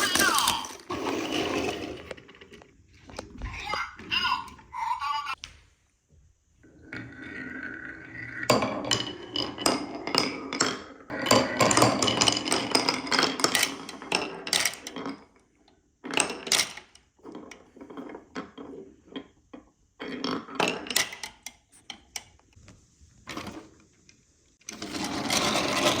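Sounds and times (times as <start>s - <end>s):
glass marbles rolling on wood: 0.0s - 4.6s, 6.6s - 15.4s, 16.0s - 21.6s, 24.7s - 26.0s.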